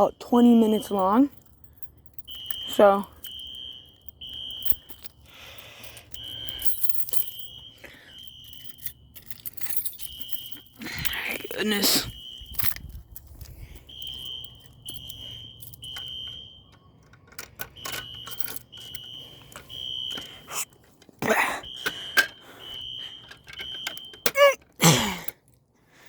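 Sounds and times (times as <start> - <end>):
handling clicks and knocks: 0.6 - 25.6
fire alarm horn blasts: 2.3 - 4.9, 7.4 - 9.2, 10.0 - 10.5, 11.5 - 12.9, 13.8 - 17.0, 17.7 - 24.6.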